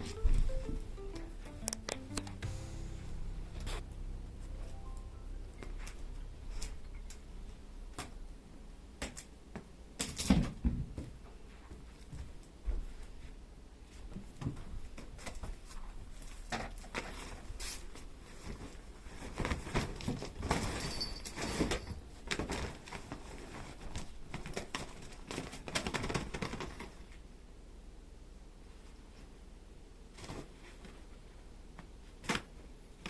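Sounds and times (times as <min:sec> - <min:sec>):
kittens scuffling and playing: 0:09.0 - 0:27.2, 0:30.1 - 0:33.0.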